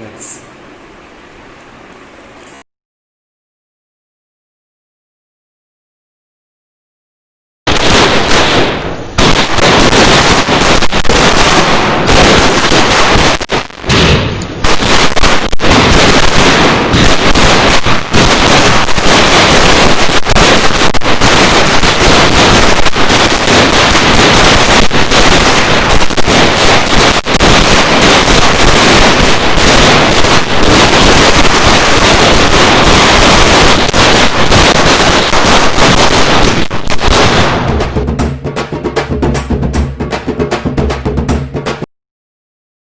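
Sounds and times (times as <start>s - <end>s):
firecrackers banging rapidly: 7.7s - 41.9s.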